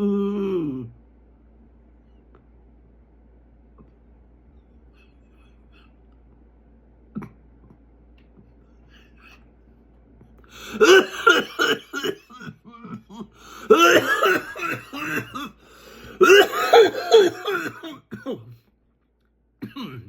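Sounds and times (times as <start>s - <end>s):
person coughing hard: 10.6s - 18.5s, 19.6s - 20.0s.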